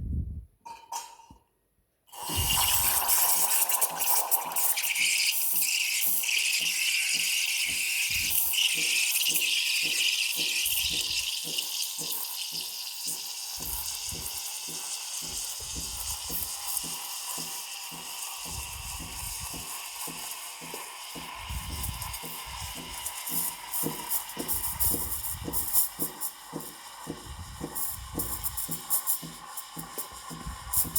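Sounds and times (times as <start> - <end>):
steam wand hissing: 2.1 - 30.9.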